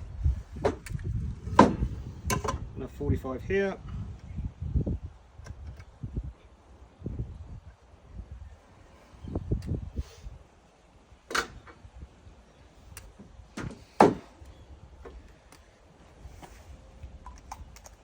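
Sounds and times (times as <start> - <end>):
wood being moved rumble: 13.6 - 14.4.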